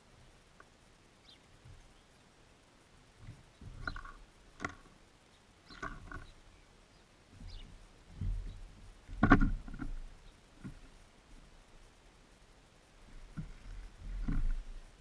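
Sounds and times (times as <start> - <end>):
birds pecking and tapping: 3.2 - 5.0, 5.7 - 6.4, 7.4 - 11.0.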